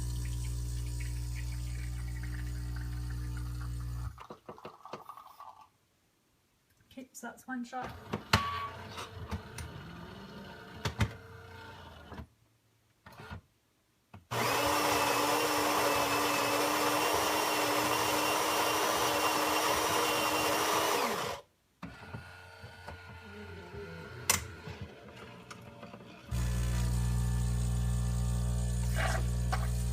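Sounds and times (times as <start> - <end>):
coffee grinder grinding beans: 0.0 - 4.2, 14.3 - 21.4, 22.2 - 29.9.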